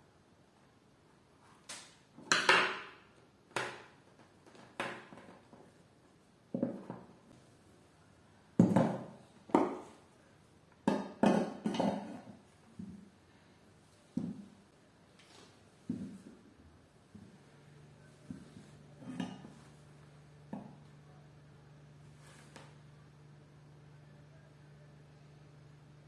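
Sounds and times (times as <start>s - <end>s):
hard objects knocking and clattering: 6.5s - 7.1s, 8.6s - 10.0s, 10.8s - 13.0s.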